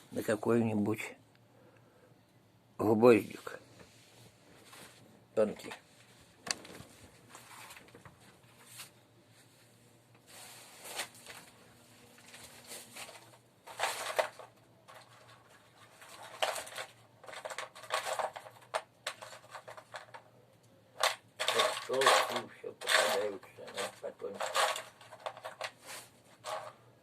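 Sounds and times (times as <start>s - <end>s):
hands rummaging through nails: 12.2s - 20.3s, 21.0s - 26.8s.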